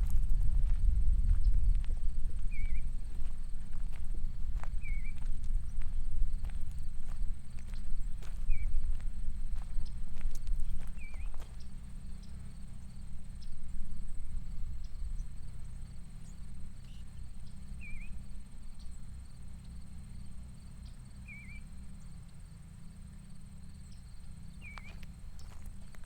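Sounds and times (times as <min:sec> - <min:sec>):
low rumble: 0:00.0 - 0:16.8
high-pitched insect trill: 0:00.0 - 0:26.0.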